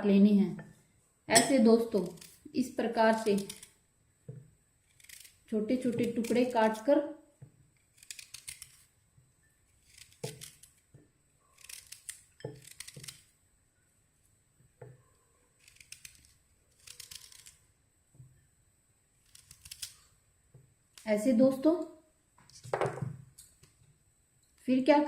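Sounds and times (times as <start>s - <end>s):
knife cutting ginger: 1.4s - 2.4s, 3.1s - 3.8s, 4.8s - 6.9s, 7.7s - 8.9s, 9.7s - 13.3s, 15.5s - 17.6s, 19.2s - 20.1s.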